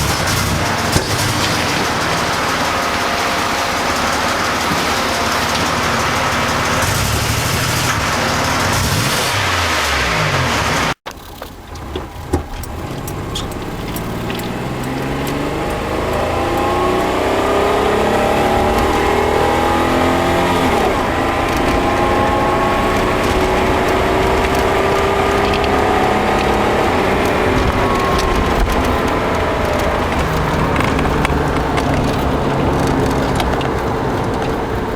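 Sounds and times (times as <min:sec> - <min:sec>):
engine backfire pop: 0:00.0 - 0:11.1
car engine running: 0:00.0 - 0:34.9.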